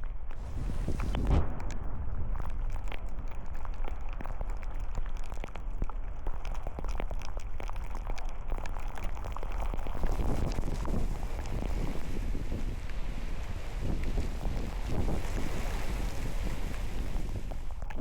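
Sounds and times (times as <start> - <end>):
low wind rumble: 0.3 - 5.3, 9.9 - 18.0.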